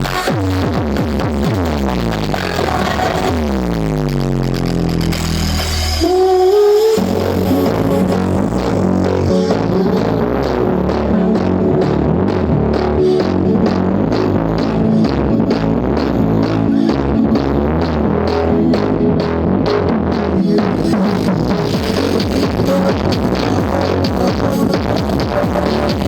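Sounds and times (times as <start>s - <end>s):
electronic dance music with heavy bass: 0.0s - 26.0s.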